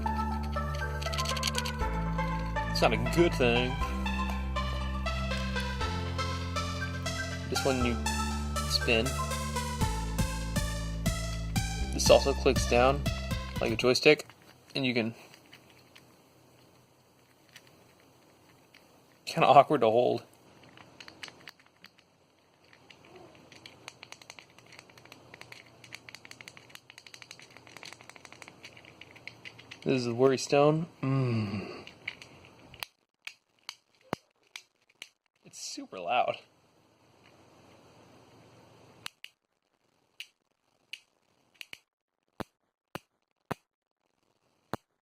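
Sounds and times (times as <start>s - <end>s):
small plastic clicks: 20.6s - 29.9s, 31.8s - 35.5s, 39.0s - 39.4s.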